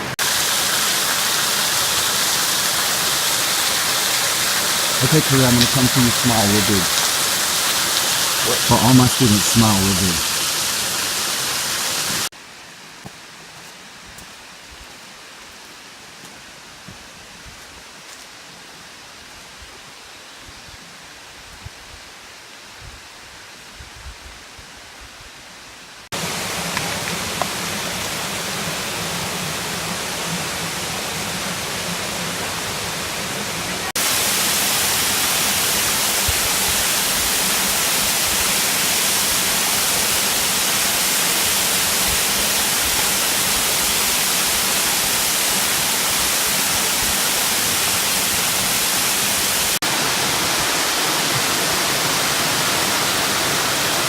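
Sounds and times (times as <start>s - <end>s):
waterfall rushing: 0.0s - 12.3s, 26.2s - 54.0s.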